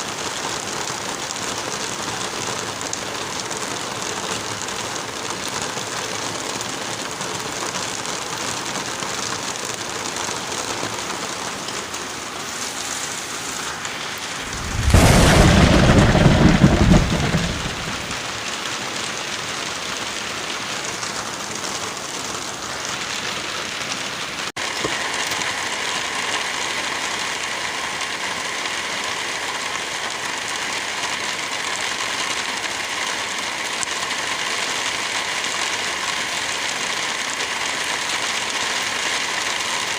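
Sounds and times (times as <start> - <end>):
steady rain: 0.0 - 39.9
thunder clap: 14.2 - 18.2.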